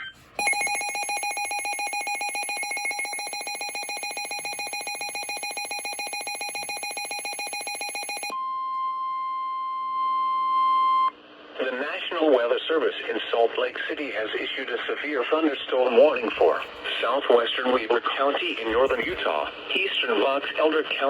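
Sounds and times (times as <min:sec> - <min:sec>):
steady alarm tone: 0:00.4 - 0:08.3, 0:18.7 - 0:19.5.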